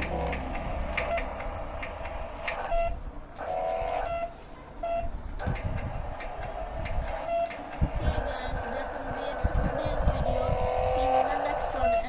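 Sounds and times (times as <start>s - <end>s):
low rumble: 0.0s - 12.0s
toy remote control car beeps: 2.5s - 3.0s, 3.6s - 5.2s, 7.0s - 12.0s.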